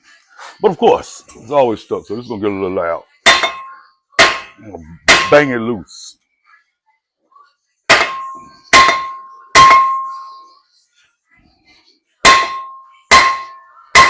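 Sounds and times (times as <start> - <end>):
hammer clanging on metal: 3.2 - 5.5, 7.9 - 10.3, 12.2 - 14.0.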